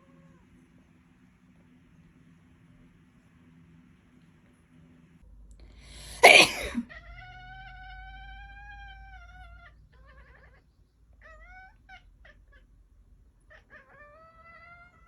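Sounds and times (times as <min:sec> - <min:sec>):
loud sneeze: 0:06.0 - 0:06.9
cat meowing: 0:06.2 - 0:12.8, 0:13.4 - 0:15.0.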